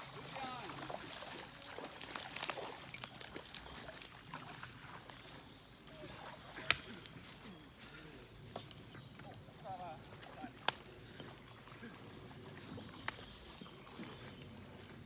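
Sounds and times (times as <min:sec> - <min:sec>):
outdoor background noise: 0:00.0 - 0:15.0.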